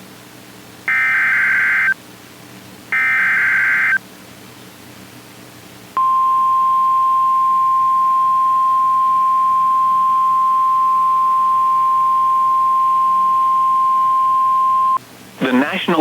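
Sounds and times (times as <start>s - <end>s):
high-pitched warning beep: 0.9s - 2.0s, 3.0s - 4.0s, 6.0s - 15.0s.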